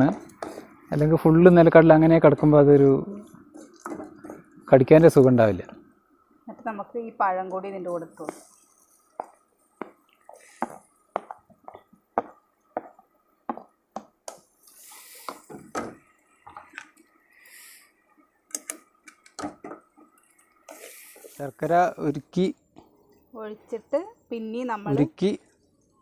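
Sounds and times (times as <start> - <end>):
food sizzling: 6.8 - 13.0, 14.0 - 25.7.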